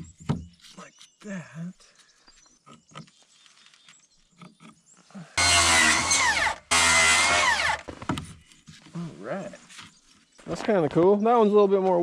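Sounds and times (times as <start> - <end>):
power drill whirring: 5.4 - 7.9.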